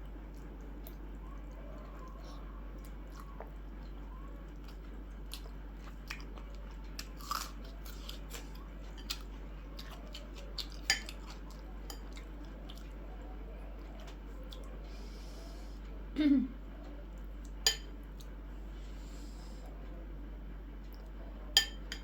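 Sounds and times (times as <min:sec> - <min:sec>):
person chewing food: 0:00.0 - 0:13.1, 0:13.8 - 0:15.6
steady low hum: 0:00.0 - 0:22.0.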